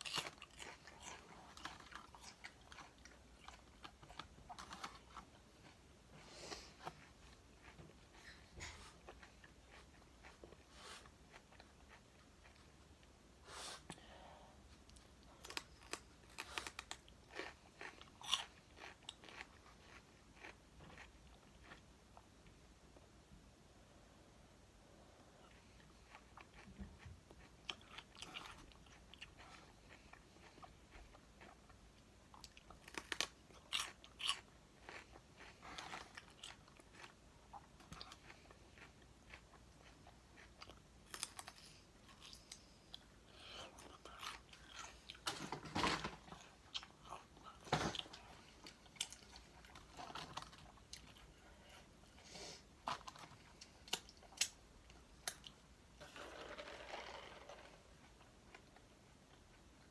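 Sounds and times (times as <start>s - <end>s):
person crunching fried chicken: 15.4s - 21.8s.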